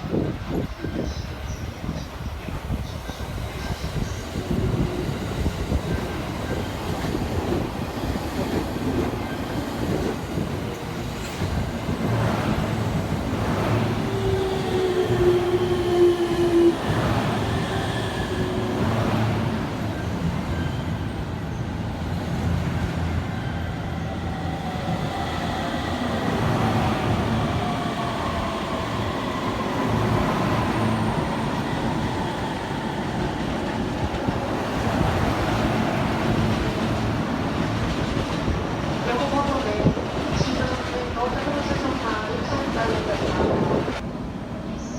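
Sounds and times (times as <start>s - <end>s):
train wheels rumbling: 2.4s - 44.0s.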